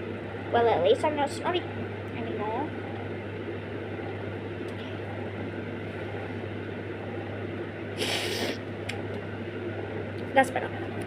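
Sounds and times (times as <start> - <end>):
low electrical hum: 0.0 - 11.0
congested sniff: 8.0 - 8.7.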